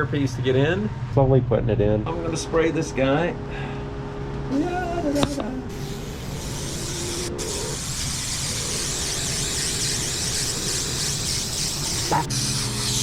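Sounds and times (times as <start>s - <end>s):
aerosol can hissing: 5.2s - 13.0s.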